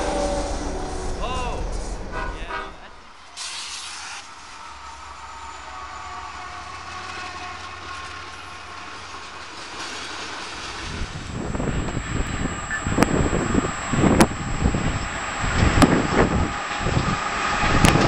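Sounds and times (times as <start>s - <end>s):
freight train wheels rumbling: 0.0s - 18.0s.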